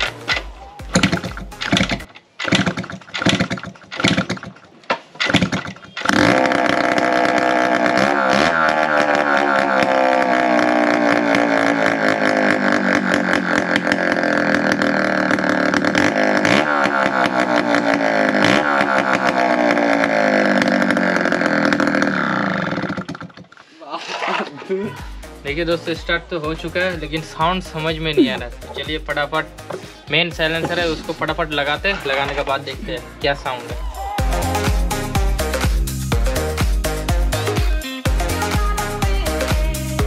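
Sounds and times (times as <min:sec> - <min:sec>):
two-stroke engine starting: 0:00.0 - 0:23.6, 0:28.0 - 0:33.5.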